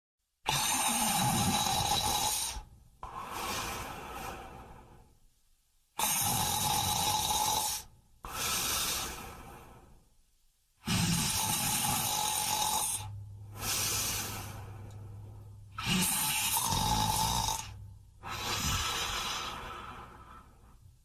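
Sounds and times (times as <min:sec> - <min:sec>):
person snoring: 0:00.5 - 0:05.0, 0:06.0 - 0:10.0, 0:10.8 - 0:20.8.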